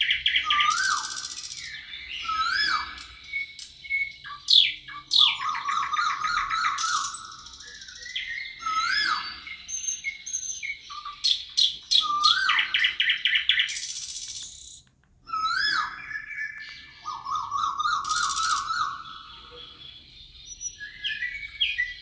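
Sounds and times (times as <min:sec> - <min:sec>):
songbirds singing and chirping: 0:00.0 - 0:22.0
bird whistled note: 0:00.4 - 0:04.4, 0:15.4 - 0:19.8.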